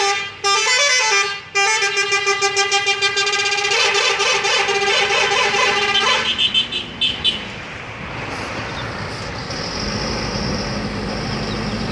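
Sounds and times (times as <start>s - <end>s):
warbling multi-tone horn: 0.5s - 6.5s
vehicle engine running: 8.1s - 11.9s.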